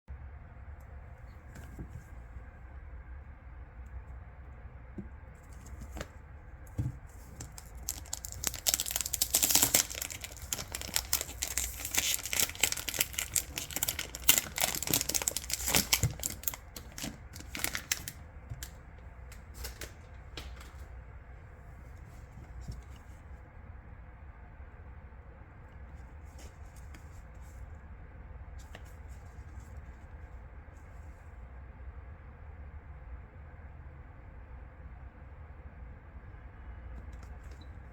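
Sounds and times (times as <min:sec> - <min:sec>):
packaging tearing and crinkling: 0:07.3 - 0:18.2.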